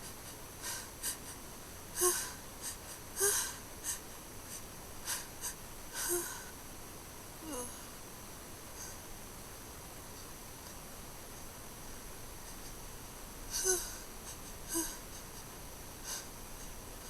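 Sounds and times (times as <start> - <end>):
person sniffling and breathing hard: 0.0 - 6.6, 13.5 - 16.8
microphone hiss: 0.0 - 17.0.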